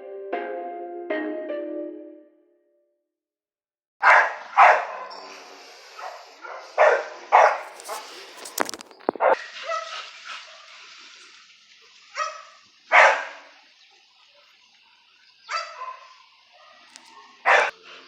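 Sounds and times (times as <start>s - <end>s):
dog barking: 4.0s - 5.3s, 6.0s - 8.1s, 9.2s - 10.7s, 12.2s - 13.5s, 15.5s - 17.8s.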